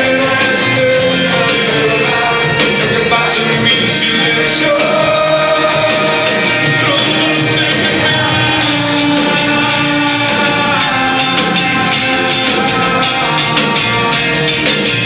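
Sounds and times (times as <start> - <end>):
live band music: 0.0 - 15.0.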